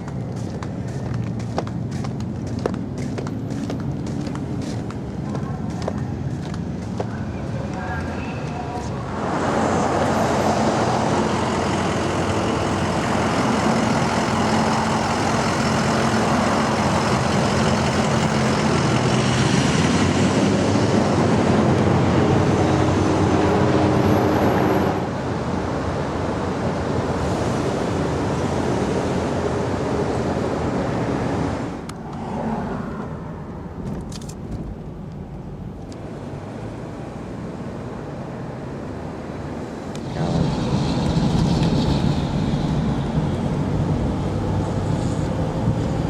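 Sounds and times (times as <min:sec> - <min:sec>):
road traffic noise: 0:00.0 - 0:46.0
vehicle engine hum: 0:00.0 - 0:46.0.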